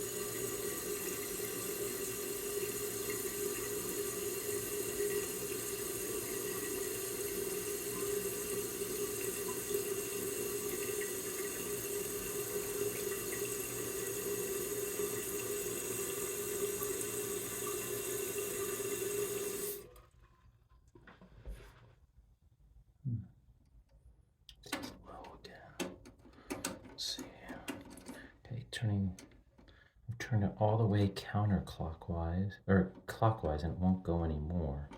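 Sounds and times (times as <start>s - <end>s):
toilet tank refilling: 0.0s - 20.3s.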